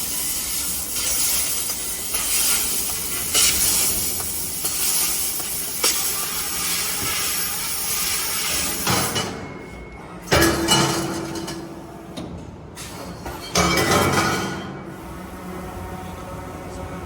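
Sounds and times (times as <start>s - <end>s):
laser cutting hiss: 0.0s - 8.9s.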